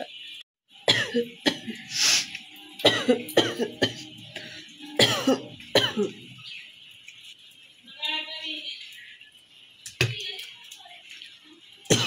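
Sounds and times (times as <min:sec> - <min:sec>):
woman coughing: 0:00.9 - 0:01.8, 0:02.8 - 0:06.2
hissing breath: 0:01.8 - 0:02.4.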